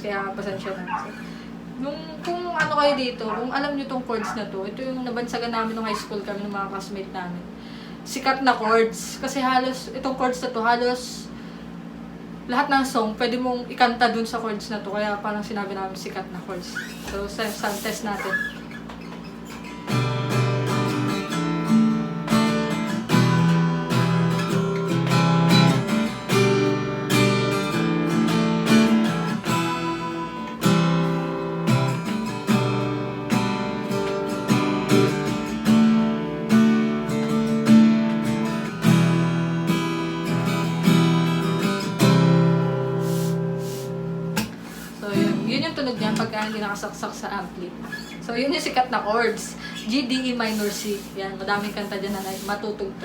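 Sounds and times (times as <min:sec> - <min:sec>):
acoustic guitar strumming chords: 0:19.3 - 0:46.3.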